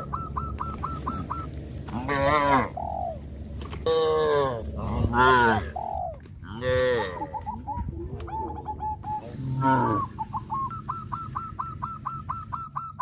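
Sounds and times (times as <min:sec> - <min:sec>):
cattle mooing: 0:01.9 - 0:02.8, 0:03.8 - 0:05.7, 0:06.5 - 0:07.5, 0:09.2 - 0:10.1.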